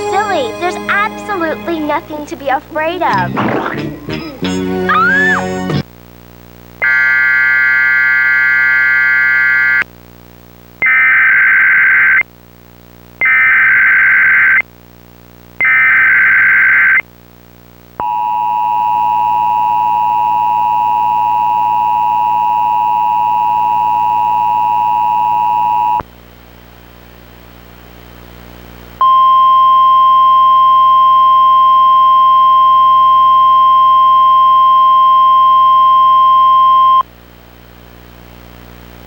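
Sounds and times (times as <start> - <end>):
two-tone attention signal: 18.0 - 26.0, 29.0 - 37.0.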